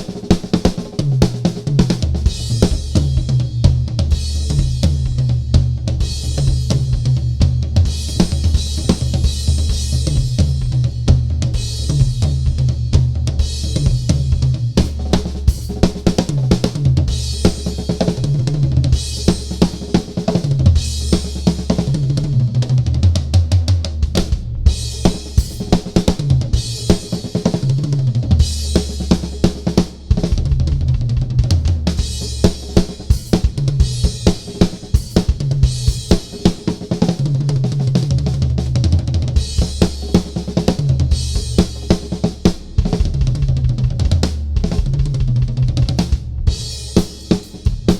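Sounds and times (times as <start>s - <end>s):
drum solo: 0.0s - 47.9s.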